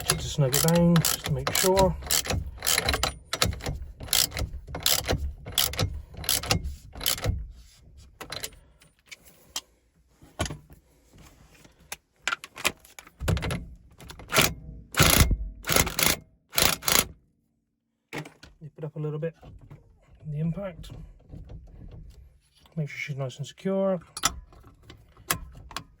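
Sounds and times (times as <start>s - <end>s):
socket ratchet clicking: 0.0s - 7.3s, 14.2s - 17.1s.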